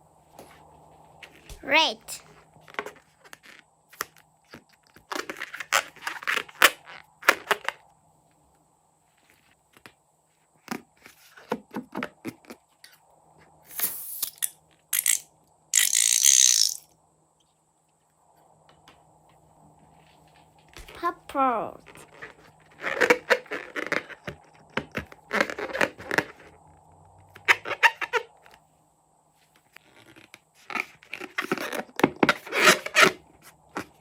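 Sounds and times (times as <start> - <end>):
hissy bursts: 13.7 - 14.5.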